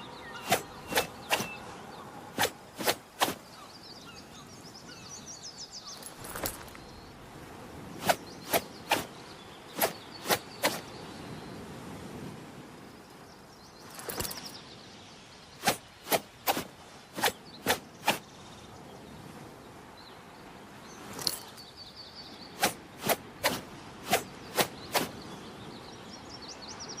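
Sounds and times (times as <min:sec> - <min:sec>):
birds chirping faintly: 0:00.0 - 0:27.0.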